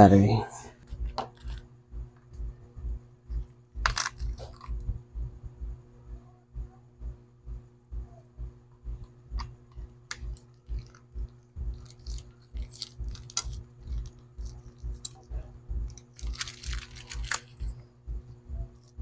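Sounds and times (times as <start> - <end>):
steady low hum: 0.0 - 19.0
regular low thump: 1.9 - 5.8, 6.6 - 16.0, 17.6 - 19.0
crunchy scraping: 9.4 - 17.8.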